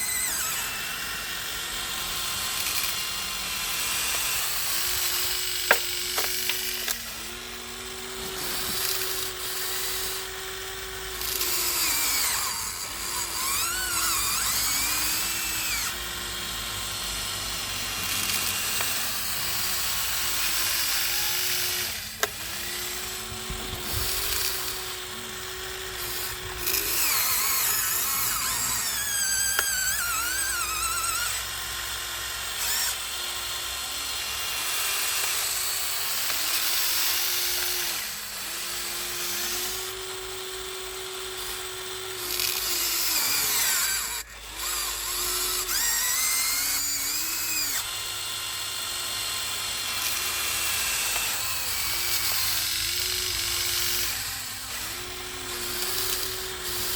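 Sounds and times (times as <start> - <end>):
small electric motors whining: 0.0 - 56.9.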